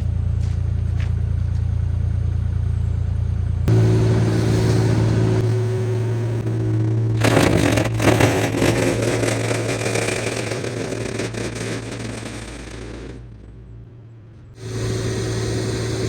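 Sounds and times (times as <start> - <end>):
diesel engine running: 0.0 - 16.0
loud clattering: 3.7 - 16.0.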